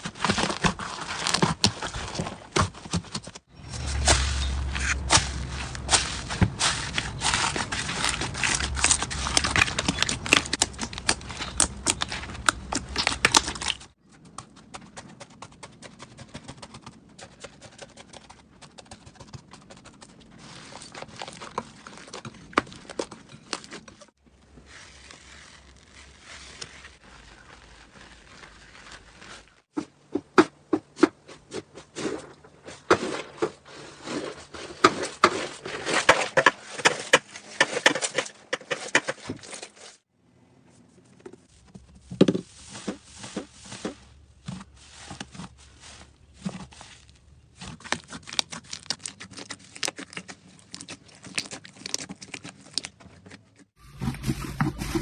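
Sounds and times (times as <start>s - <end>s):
slime crackling and popping: 47.7s - 53.0s.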